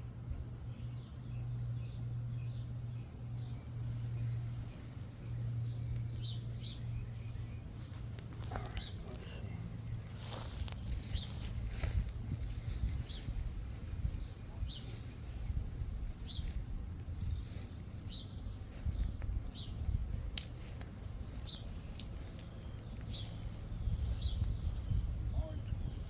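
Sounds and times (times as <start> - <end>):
steady low rumble: 0.0 - 26.0
bird chirping: 0.6 - 13.4, 16.2 - 16.6, 17.2 - 20.0, 21.2 - 26.0
campfire crackling and popping: 4.5 - 14.4, 15.1 - 25.3.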